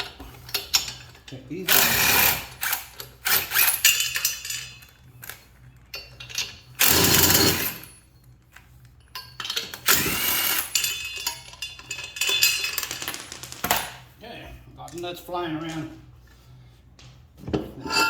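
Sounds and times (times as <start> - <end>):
power tool spinning lug nuts: 1.7 - 4.4, 6.4 - 7.9, 9.6 - 11.0.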